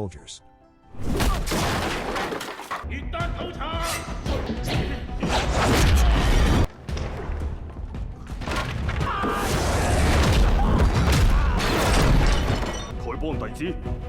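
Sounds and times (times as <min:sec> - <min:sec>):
dramatic film music: 0:00.0 - 0:14.0.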